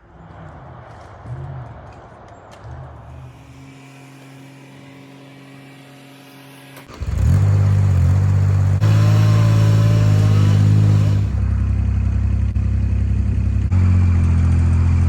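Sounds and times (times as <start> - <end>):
loud engine revving up: 2.6 - 12.6
quiet engine running: 3.5 - 15.0.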